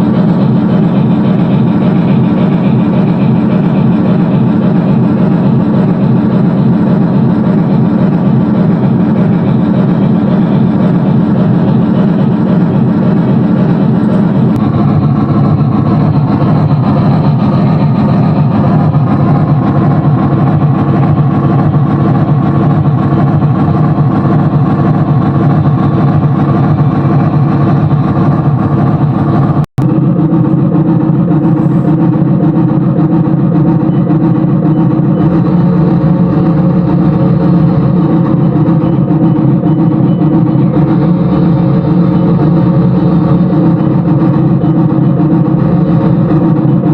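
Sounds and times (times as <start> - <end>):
steam locomotive rumbling: 0.0 - 46.9.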